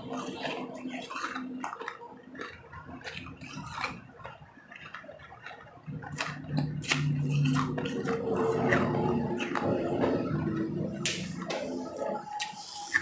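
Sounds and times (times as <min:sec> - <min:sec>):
chewing snow and ice crunching: 0:00.0 - 0:13.0.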